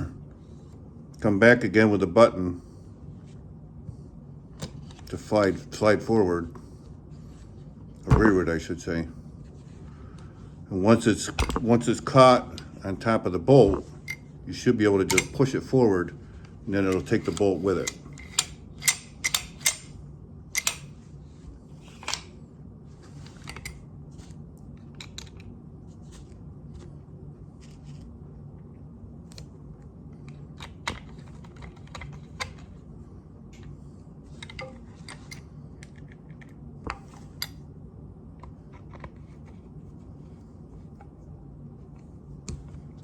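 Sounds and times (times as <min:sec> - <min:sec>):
low steady hum: 0:00.0 - 0:43.0
metal rifle parts clicking: 0:15.0 - 0:15.5, 0:16.9 - 0:19.9, 0:20.6 - 0:20.9.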